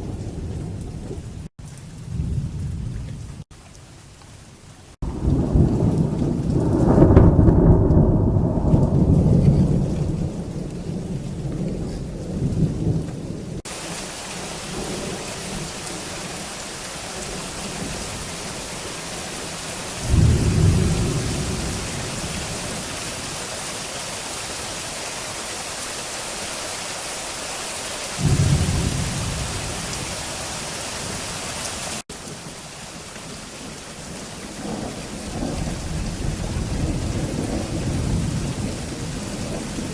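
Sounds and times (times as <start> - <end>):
thunder rumbling: 0.0 - 3.4, 5.0 - 13.8, 14.4 - 23.6, 28.2 - 31.4, 34.5 - 39.9
thunderclaps: 0.0 - 3.4, 5.0 - 13.8, 20.0 - 23.4, 28.2 - 30.4, 34.6 - 39.9
heavy rain falling: 0.0 - 39.9.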